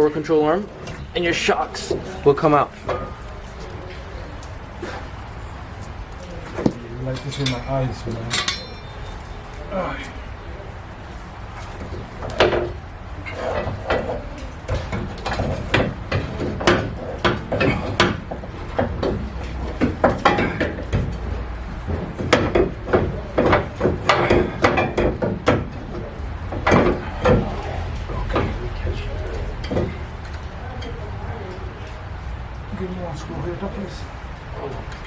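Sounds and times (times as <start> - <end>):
tools knocking and clanking: 6.6 - 9.0, 11.8 - 28.7, 29.3 - 30.1.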